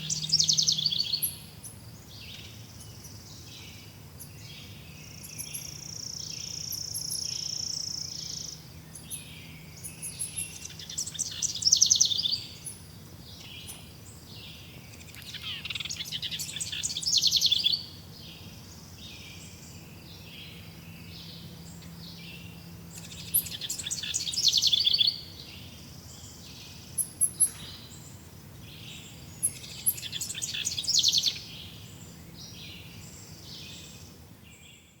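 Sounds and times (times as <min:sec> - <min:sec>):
loud fast birdsong: 0:00.0 - 0:35.0
soft repeated bird chirps: 0:00.0 - 0:35.0.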